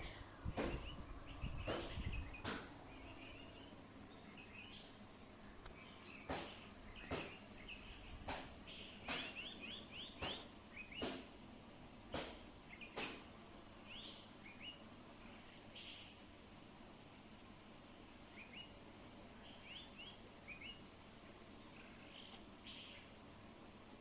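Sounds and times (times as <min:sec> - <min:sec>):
small bird chirping: 0:00.0 - 0:11.4, 0:12.1 - 0:24.0.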